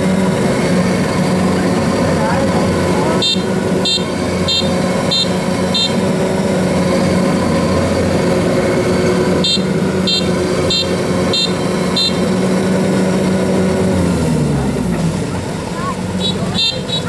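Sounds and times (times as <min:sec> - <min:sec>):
diesel engine running under load: 0:00.0 - 0:17.0
electronic warning beeper: 0:03.2 - 0:06.0, 0:09.4 - 0:12.3.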